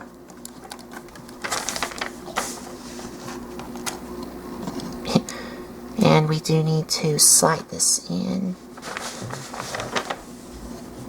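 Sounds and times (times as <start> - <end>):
faint steady hum: 0.0 - 11.0
plastic parts clicking: 0.3 - 2.1
plastic scraping: 8.8 - 11.0.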